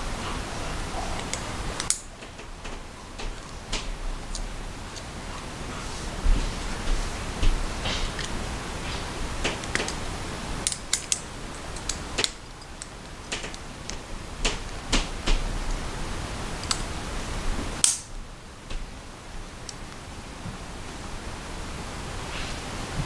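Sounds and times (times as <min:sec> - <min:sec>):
folding knife parts clicking: 0:01.2 - 0:04.4, 0:10.6 - 0:14.7, 0:16.6 - 0:16.9.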